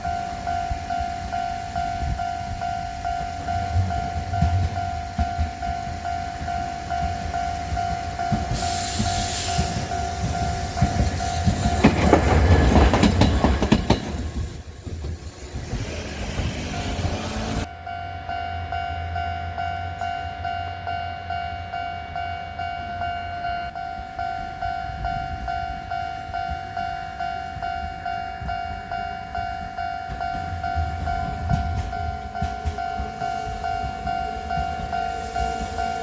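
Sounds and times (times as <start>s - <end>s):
level crossing alarm bell: 0.0s - 12.1s, 16.8s - 36.0s
tram rolling over rails: 0.0s - 36.0s
short hiss: 8.6s - 9.8s.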